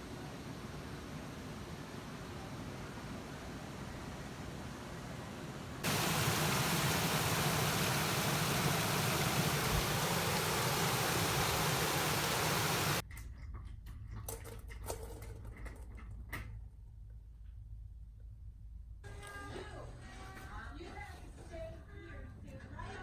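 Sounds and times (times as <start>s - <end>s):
loud static hiss: 0.0s - 13.0s.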